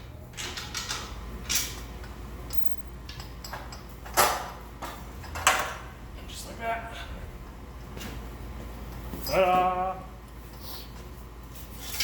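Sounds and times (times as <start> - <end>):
metal clinks and scrapes: 2.5 - 3.0.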